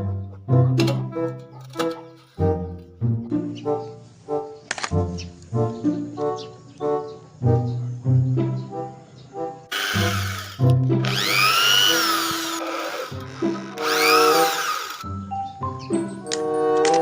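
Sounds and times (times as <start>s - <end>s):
background music: 0.0s - 17.0s
power tool motor whirring: 9.7s - 15.1s.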